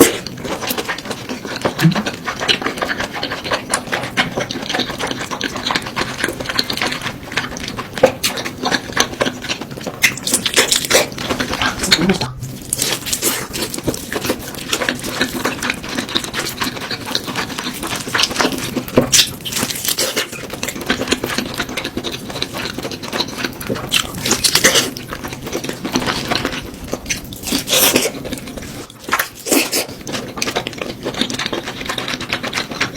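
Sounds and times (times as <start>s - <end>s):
food crunching while chewed: 0.0s - 32.9s.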